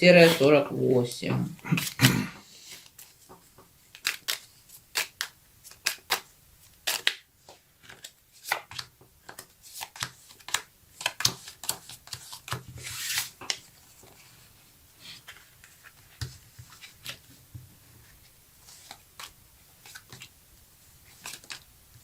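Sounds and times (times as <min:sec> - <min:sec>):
card slaps and snaps: 0:04.0 - 0:07.2.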